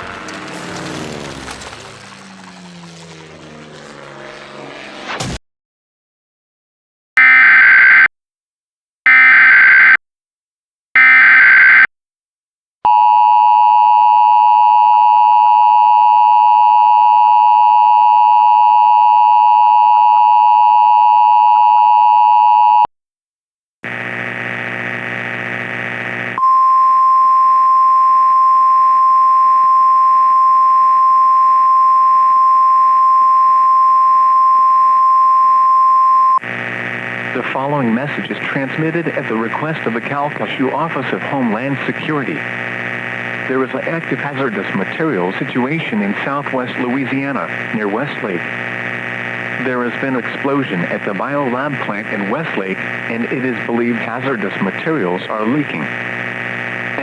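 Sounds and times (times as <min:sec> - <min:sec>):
harsh buzzing: 0:23.8 - 0:26.8, 0:36.4 - 0:57.0
two-tone attention signal: 0:26.4 - 0:36.4.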